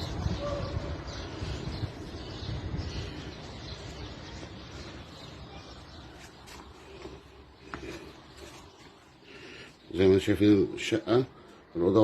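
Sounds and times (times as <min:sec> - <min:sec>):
birds chirping faintly: 0:00.0 - 0:12.0
street traffic rumble: 0:00.0 - 0:12.0.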